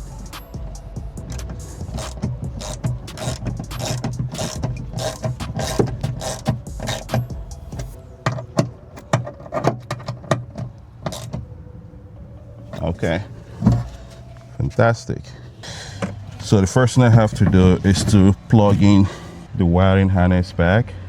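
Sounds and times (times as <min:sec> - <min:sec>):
door lock parts clicking and knocking: 0:01.3 - 0:11.5.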